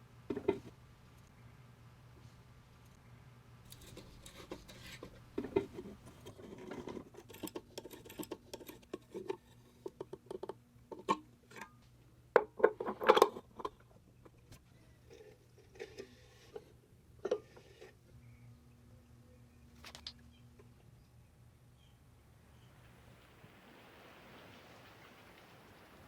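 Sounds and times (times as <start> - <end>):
small metal parts clicking and scraping: 3.7 - 11.7.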